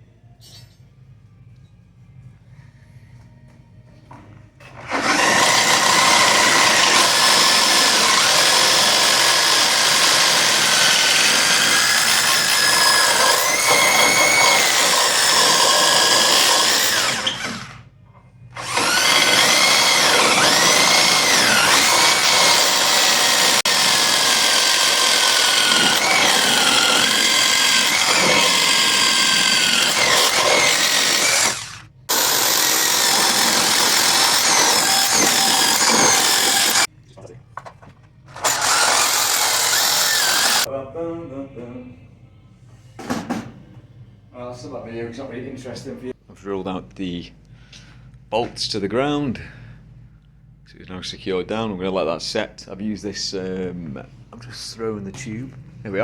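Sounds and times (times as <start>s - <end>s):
power drill boring into floor: 4.7s - 17.8s, 18.6s - 36.9s, 38.3s - 40.7s.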